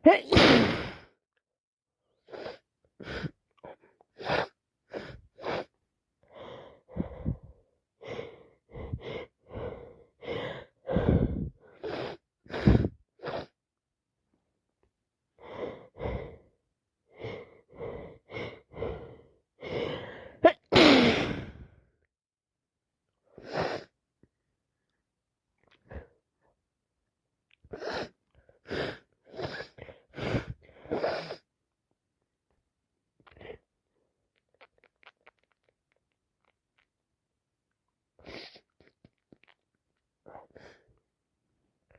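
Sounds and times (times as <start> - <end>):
woman sneezing: 0.0 - 1.1, 20.4 - 21.5
woman sniffing through blocked nose: 0.1 - 1.1, 4.2 - 5.7, 11.0 - 13.6, 19.6 - 21.7, 23.4 - 24.0, 27.7 - 31.5, 38.2 - 39.0.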